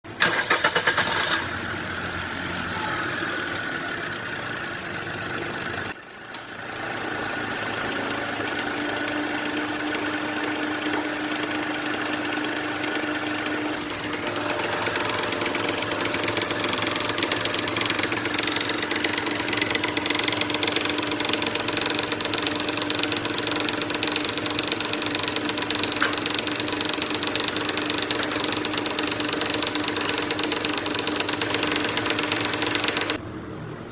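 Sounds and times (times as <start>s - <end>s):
car engine idling: 0.2s - 8.8s, 13.8s - 33.2s
engine ticking-knocking noise: 14.7s - 33.2s.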